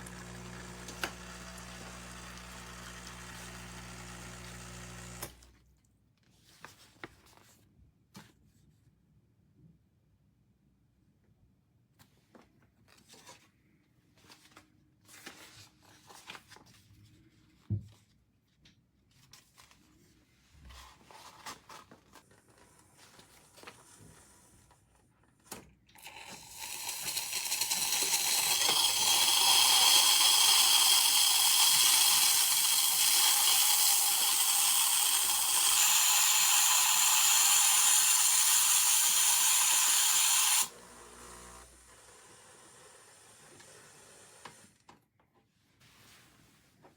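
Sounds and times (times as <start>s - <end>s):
steam wand hissing: 26.0s - 40.7s.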